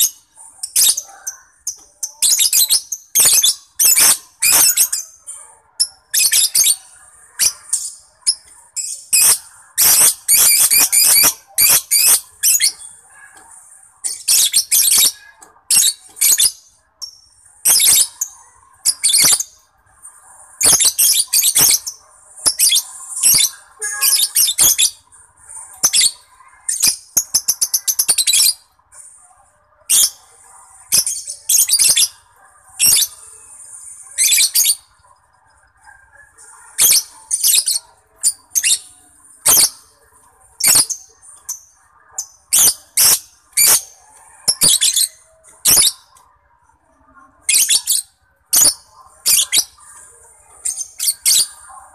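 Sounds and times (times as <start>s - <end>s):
lovebird chattering song: 5.9s - 12.9s, 20.6s - 25.0s.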